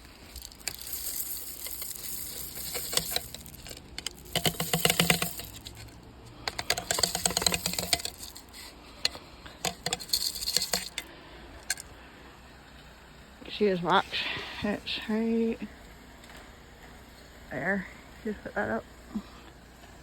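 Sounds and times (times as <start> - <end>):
seeds pouring into feeder: 0.0 - 8.7, 9.7 - 11.8.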